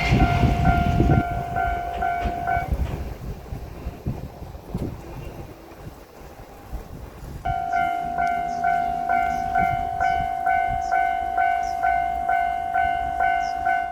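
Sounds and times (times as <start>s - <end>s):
level crossing warning bell: 0.0s - 2.9s, 7.5s - 13.9s.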